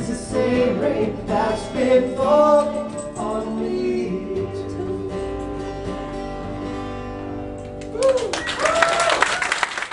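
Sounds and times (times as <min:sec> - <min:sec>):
acoustic guitar chord ringing: 0:00.0 - 0:07.8
audience applause: 0:07.8 - 0:09.9
person whooping: 0:07.9 - 0:09.6.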